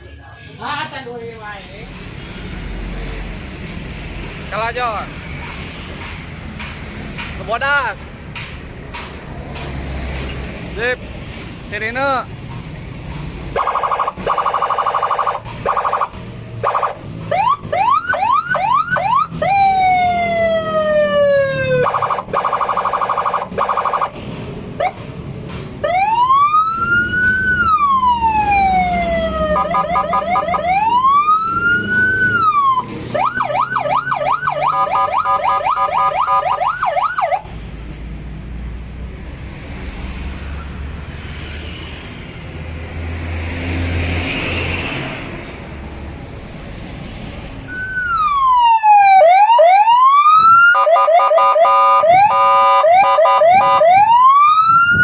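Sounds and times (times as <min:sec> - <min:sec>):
electronic siren cycling tones: 0:13.6 - 0:24.2, 0:25.9 - 0:37.4, 0:47.7 - 0:55.0.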